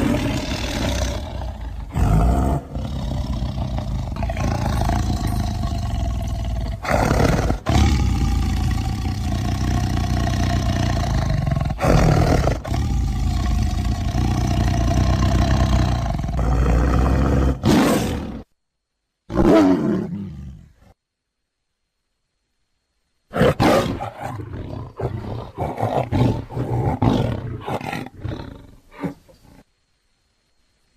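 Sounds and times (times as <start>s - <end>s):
big cat growling and roaring: 0.0s - 18.5s, 23.4s - 29.6s.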